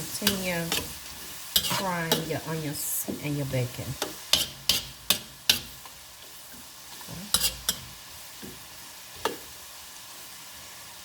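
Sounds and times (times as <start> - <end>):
food sizzling in a frying pan: 0.0 - 11.0.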